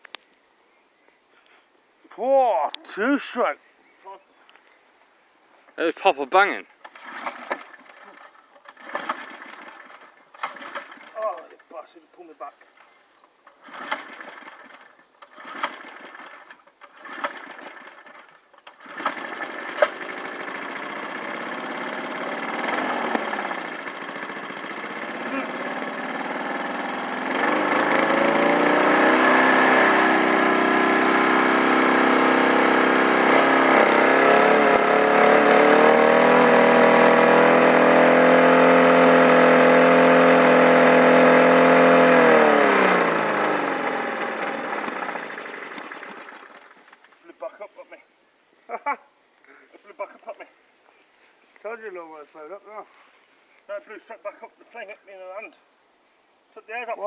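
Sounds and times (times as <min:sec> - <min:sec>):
lawn mower engine running: 0:06.4 - 0:11.6, 0:12.6 - 0:47.3.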